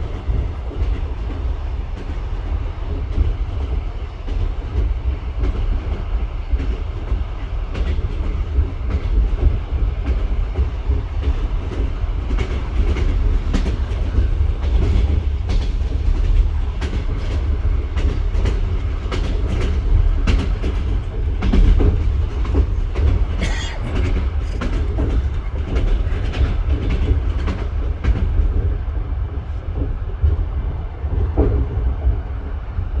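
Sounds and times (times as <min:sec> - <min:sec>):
train wheels knocking on rails: 0:00.0 - 0:32.2.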